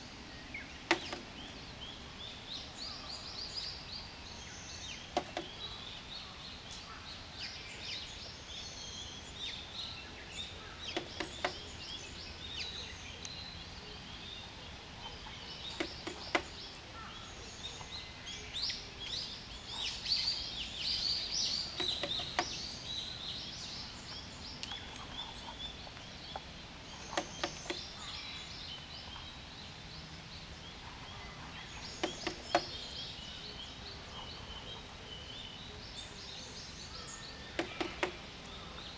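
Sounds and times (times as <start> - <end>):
small birds chirping: 0.0 - 38.9
sharp taps: 0.9 - 1.3, 5.2 - 5.6, 10.9 - 11.7, 15.7 - 16.6, 21.7 - 22.6, 27.1 - 27.9, 31.9 - 32.8, 37.5 - 38.3.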